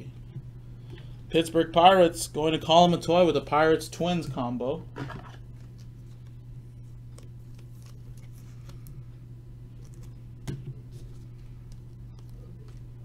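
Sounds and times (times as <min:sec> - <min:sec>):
low electrical hum: 0:00.0 - 0:13.0
card handling noise: 0:04.2 - 0:13.0
trading cards clicking and sliding: 0:07.0 - 0:09.1.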